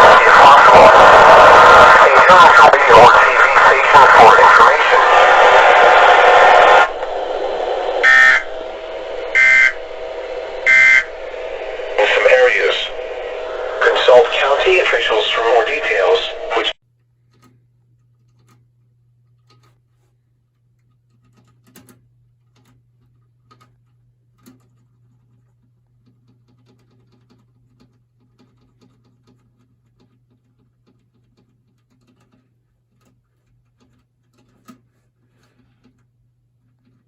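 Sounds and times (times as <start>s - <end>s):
steady low hum: 0.0s - 21.4s.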